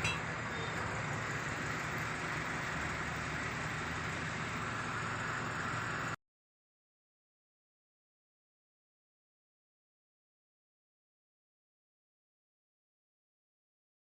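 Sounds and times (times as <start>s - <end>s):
car engine idling: 0.0s - 6.2s.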